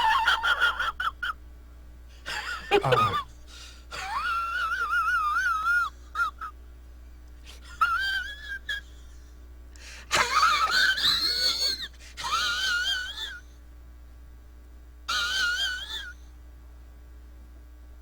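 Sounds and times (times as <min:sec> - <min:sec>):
wavering wheezing squeal: 0:15.1 - 0:16.2.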